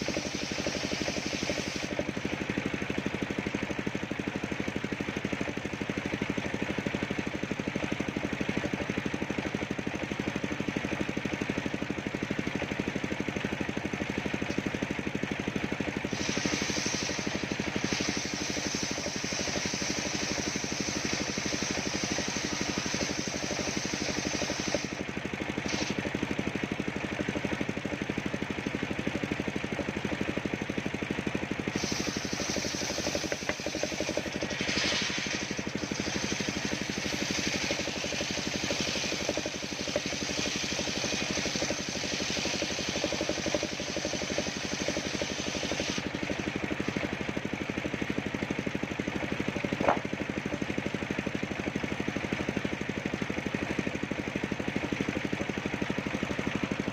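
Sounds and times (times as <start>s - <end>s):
high hiss of saw: 0.0s - 2.3s, 16.0s - 26.3s, 31.4s - 47.1s
sawmill engine running: 0.0s - 56.9s.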